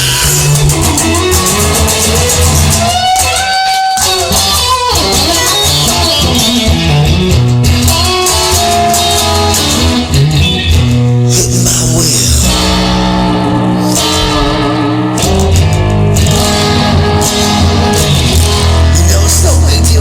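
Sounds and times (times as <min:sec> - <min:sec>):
bass guitar: 0:00.0 - 0:20.0
drums: 0:00.0 - 0:20.0
lead electric guitar: 0:00.0 - 0:20.0.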